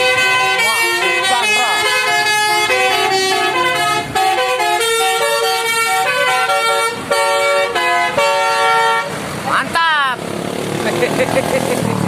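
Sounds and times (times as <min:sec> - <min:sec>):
multi-tone bus horn tune: 0:00.0 - 0:09.3.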